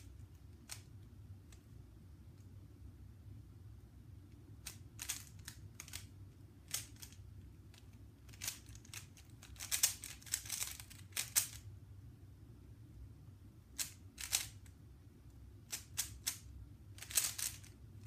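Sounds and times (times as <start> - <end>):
puzzle cube plastic clicking: 4.6 - 11.6, 13.8 - 14.7, 15.7 - 17.8.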